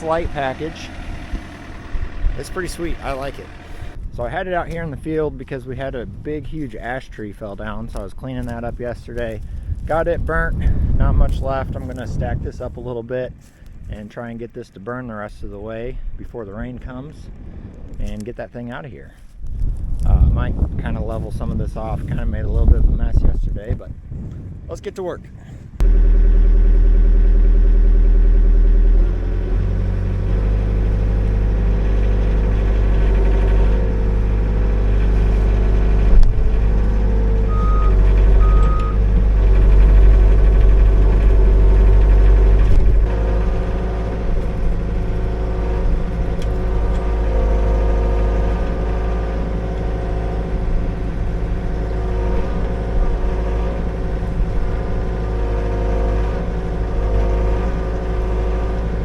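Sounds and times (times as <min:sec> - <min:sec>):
excavator diesel engine running: 0:00.0 - 0:05.1, 0:25.8 - 0:59.0
short high beeps: 0:37.5 - 0:39.0.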